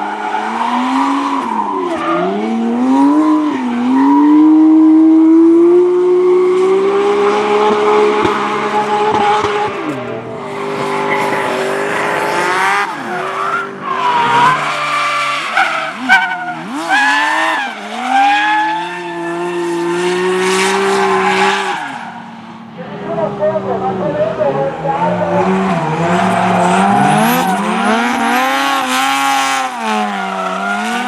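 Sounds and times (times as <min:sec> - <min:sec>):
car engine revving high: 0:00.0 - 0:31.0
tyres squealing: 0:06.8 - 0:19.7, 0:25.6 - 0:31.0.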